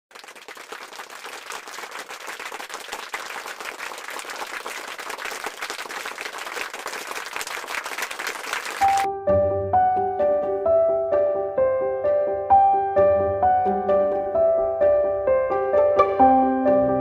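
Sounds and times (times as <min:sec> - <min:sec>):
crowd applauding: 0:00.1 - 0:09.1.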